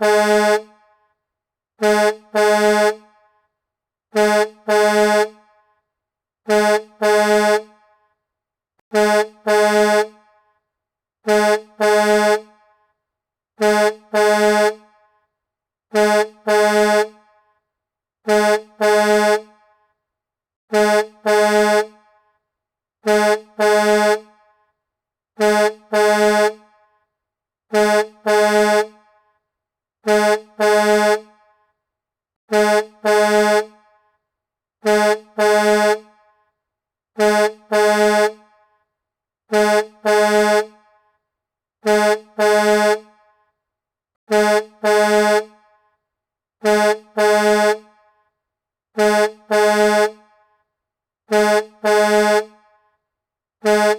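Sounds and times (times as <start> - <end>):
truck horn honking: 0.0 - 0.7, 1.8 - 3.1, 4.1 - 5.5, 6.5 - 7.8, 8.9 - 10.2, 11.2 - 12.6, 13.6 - 14.9, 15.9 - 17.2, 18.2 - 19.6, 20.7 - 22.0, 23.0 - 24.3, 25.4 - 26.7, 27.7 - 29.0, 30.0 - 31.4, 32.5 - 33.8, 34.8 - 36.1, 37.2 - 38.4, 39.5 - 40.8, 41.8 - 43.1, 44.3 - 45.6, 46.6 - 47.9, 49.0 - 50.2, 51.3 - 52.6, 53.6 - 53.9.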